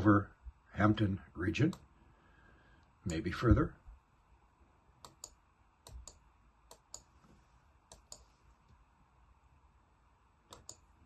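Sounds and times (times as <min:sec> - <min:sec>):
computer mouse double-clicks: 0:05.0 - 0:07.1, 0:07.9 - 0:08.3, 0:10.5 - 0:10.9.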